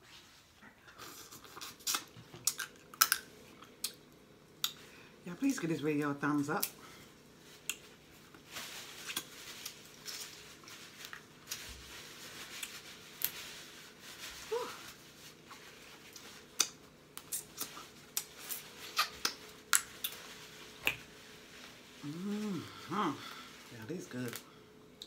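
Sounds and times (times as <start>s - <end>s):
soft rustling: 7.4s - 16.5s, 17.7s - 24.3s.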